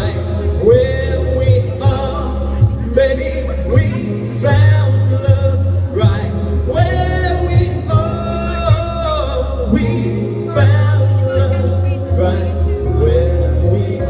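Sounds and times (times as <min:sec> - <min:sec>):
backing track with deep bass: 0:00.0 - 0:14.0
man singing wordless notes: 0:00.0 - 0:14.0.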